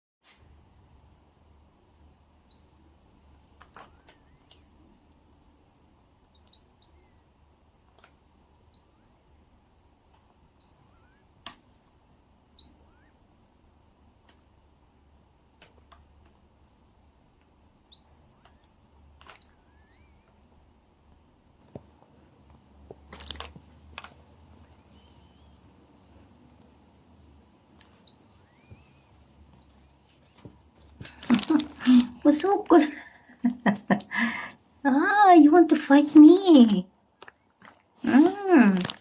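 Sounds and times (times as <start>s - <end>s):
small bird chirping: 2.4s - 5.0s, 6.2s - 9.6s, 10.4s - 11.5s, 12.4s - 13.3s, 17.8s - 20.5s, 22.2s - 34.3s, 34.9s - 39.0s.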